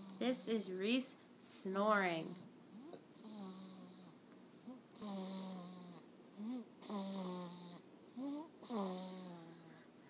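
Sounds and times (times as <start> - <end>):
person snoring: 3.2 - 9.9.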